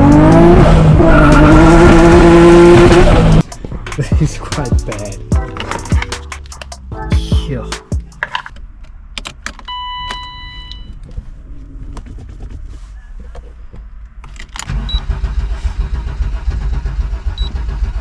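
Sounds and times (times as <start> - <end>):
car engine starting and rumbling: 0.0 - 6.8, 14.5 - 18.0.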